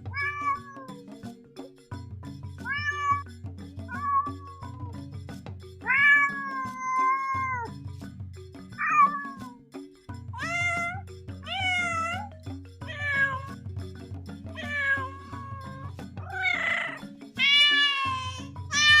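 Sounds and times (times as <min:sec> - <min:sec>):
cats meowing: 0:00.1 - 0:00.9, 0:02.6 - 0:03.2, 0:03.9 - 0:04.9, 0:05.8 - 0:07.7, 0:08.8 - 0:09.6, 0:10.4 - 0:13.6, 0:14.6 - 0:19.0.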